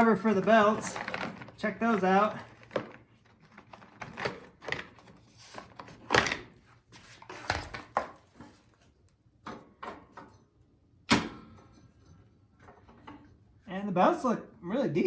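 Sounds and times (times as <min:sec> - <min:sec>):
knocks and clicks of plastic cover: 0:00.5 - 0:05.0.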